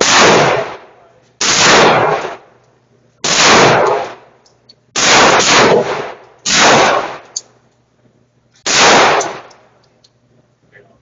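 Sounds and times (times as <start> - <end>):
gunshots: 0.0 - 2.5, 3.2 - 4.3, 5.0 - 7.3, 8.6 - 9.5.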